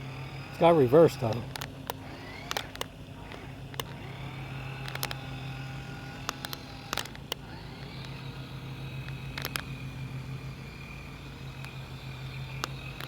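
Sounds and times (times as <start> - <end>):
low steady hum: 0.0 - 13.0
small electric motor whining: 0.0 - 13.0
sharp clicks: 1.1 - 4.2, 4.8 - 5.4, 6.2 - 8.4, 9.0 - 9.8, 11.6 - 13.0.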